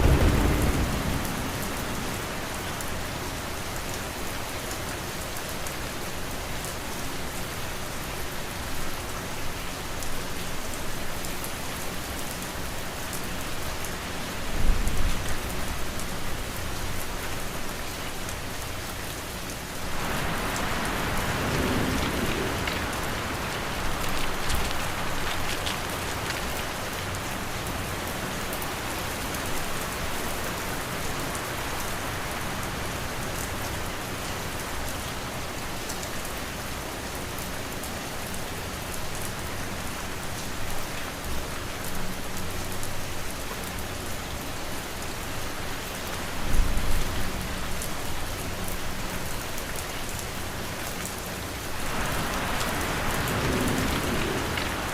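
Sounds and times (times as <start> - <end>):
rain patter: 0.0 - 54.9.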